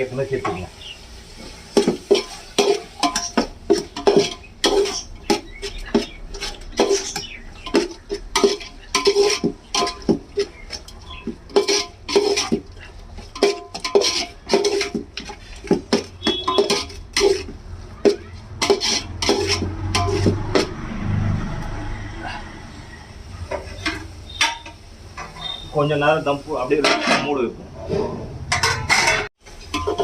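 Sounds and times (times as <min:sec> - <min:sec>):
metal ladle scraping cooking pot: 0:01.7 - 0:20.9, 0:23.4 - 0:25.7, 0:26.8 - 0:30.0.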